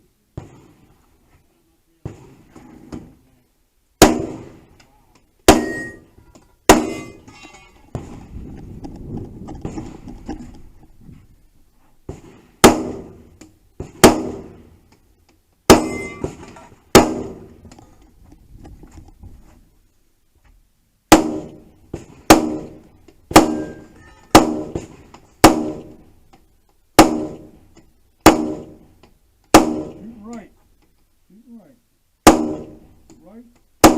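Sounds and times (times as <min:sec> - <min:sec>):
gunshots with ringing tail: 0:04.0 - 0:04.6, 0:05.5 - 0:06.0, 0:06.7 - 0:07.2, 0:15.7 - 0:17.5, 0:22.3 - 0:24.8, 0:25.4 - 0:26.0, 0:27.0 - 0:27.6, 0:28.2 - 0:28.8, 0:29.6 - 0:30.0, 0:32.2 - 0:32.9.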